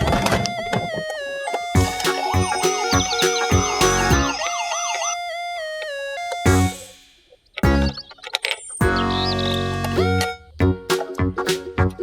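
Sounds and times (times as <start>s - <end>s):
electronic siren warbling: 0.0s - 7.0s
upbeat background music: 1.7s - 4.5s, 6.4s - 7.0s, 7.6s - 8.0s, 8.8s - 12.0s.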